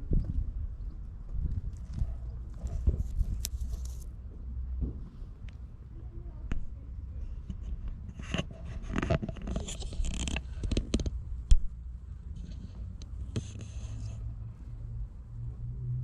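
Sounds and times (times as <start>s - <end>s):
objects rustling and scraping: 1.8s - 4.1s, 7.4s - 11.2s, 12.3s - 14.3s.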